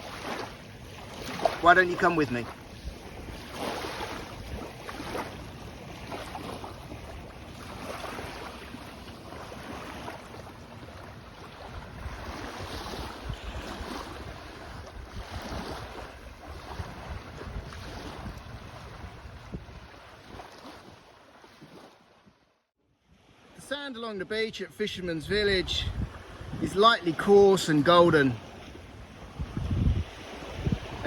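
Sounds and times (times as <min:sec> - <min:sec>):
small waves washing on sand: 0:00.0 - 0:23.9, 0:25.6 - 0:31.0
wind buffeting microphone: 0:11.6 - 0:21.0, 0:25.2 - 0:27.4, 0:28.7 - 0:31.0.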